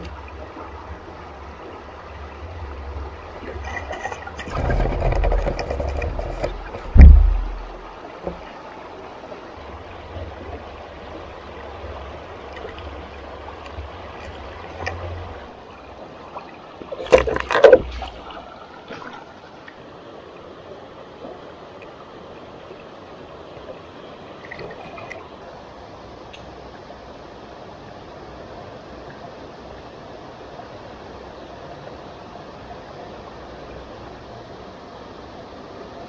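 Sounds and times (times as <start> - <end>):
stream water rushing: 0.0 - 36.0
sharp knocks and splashing: 3.4 - 8.5, 16.8 - 19.2
loud heavy thump: 6.7 - 7.8.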